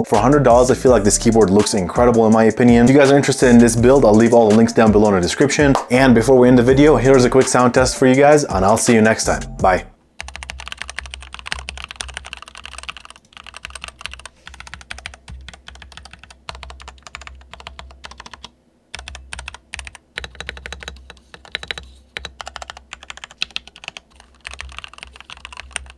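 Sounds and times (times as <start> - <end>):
mechanical keyboard typing: 10.2 - 25.9.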